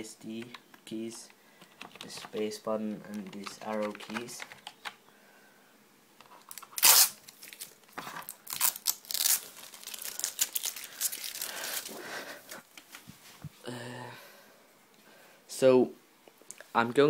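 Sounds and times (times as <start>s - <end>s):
packaging crinkling and rustling: 6.2s - 13.0s
packaging ripping: 6.3s - 12.0s.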